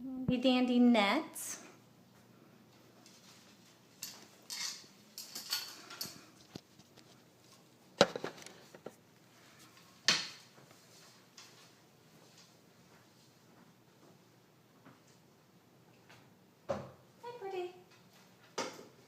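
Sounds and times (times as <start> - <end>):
rustling and clattering: 3.0 - 12.3.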